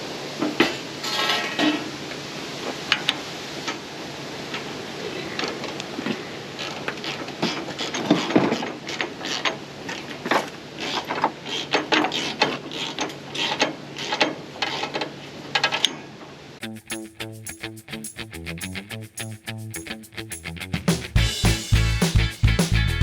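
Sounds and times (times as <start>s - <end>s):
hand tools clicking and clanking: 16.6s - 23.0s
background music: 20.9s - 23.0s.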